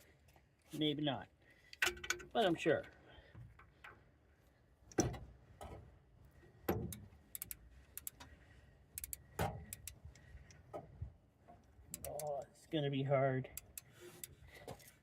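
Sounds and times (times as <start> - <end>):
torque wrench ratchet clicking: 7.3 - 8.2, 9.0 - 10.0, 11.9 - 12.3, 13.6 - 14.4.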